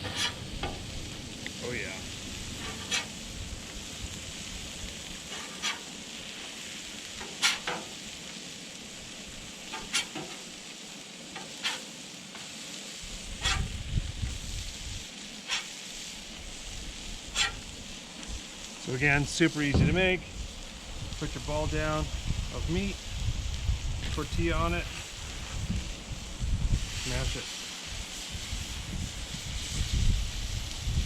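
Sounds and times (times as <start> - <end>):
meat sizzling on a griddle: 0.0 - 31.0
metal spatula clicking on griddle: 11.4 - 12.4, 15.5 - 15.8.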